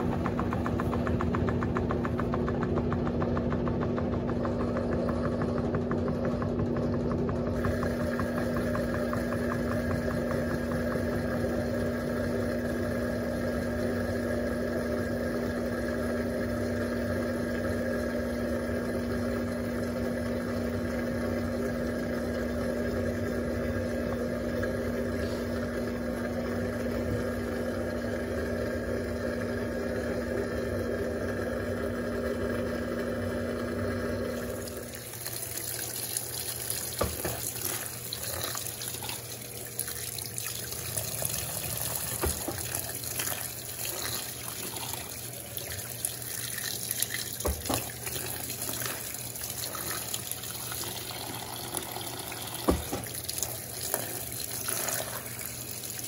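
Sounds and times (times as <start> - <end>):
washing machine motor humming: 0.0 - 56.0
water running into tub: 6.1 - 12.9, 34.3 - 56.0
knocks and splashes: 36.9 - 38.1, 41.9 - 44.1, 47.1 - 49.1, 52.6 - 53.4.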